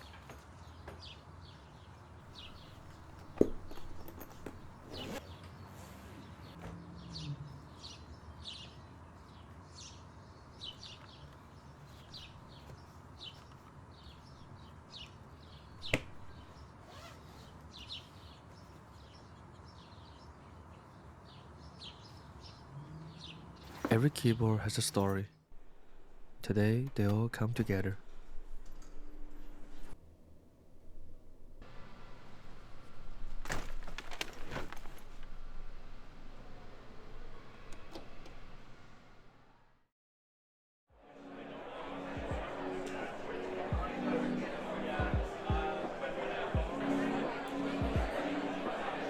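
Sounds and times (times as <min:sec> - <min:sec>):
small birds chirping: 0:00.0 - 0:23.9.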